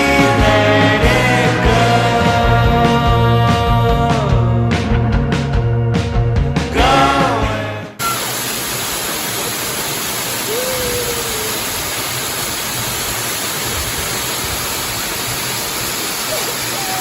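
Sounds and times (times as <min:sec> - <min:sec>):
waterfall rushing: 0:08.0 - 0:17.0.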